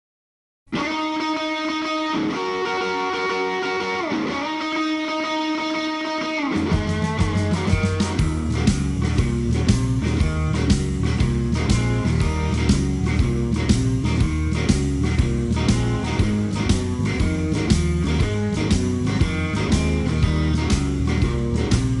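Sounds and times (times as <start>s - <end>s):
bass guitar: 0.7s - 22.0s
electric guitar sliding chords: 0.8s - 22.0s
drums playing steady groove: 6.5s - 22.0s.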